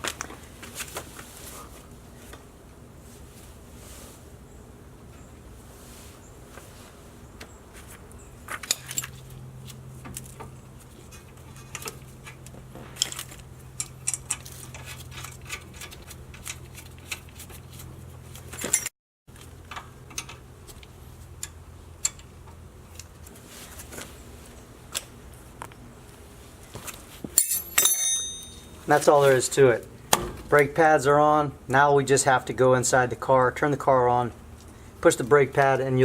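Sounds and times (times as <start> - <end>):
metallic clicks of brake parts: 19.7 - 23.3.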